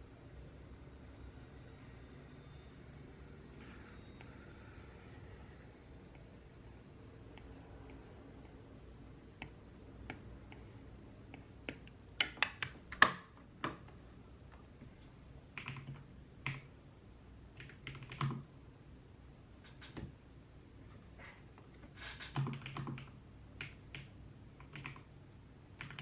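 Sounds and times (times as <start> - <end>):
computer keyboard typing: 11.3 - 13.9, 15.5 - 16.8, 17.6 - 18.5, 22.1 - 25.1, 25.8 - 26.0.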